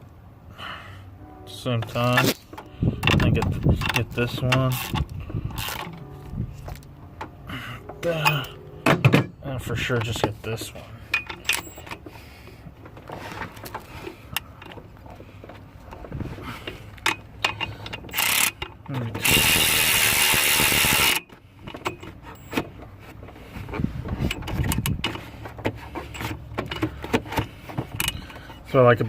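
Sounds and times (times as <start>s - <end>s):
tool handling clicks and knocks: 1.8s - 19.3s, 21.1s - 28.7s
cordless ratchet running: 4.7s - 5.8s, 17.6s - 21.2s.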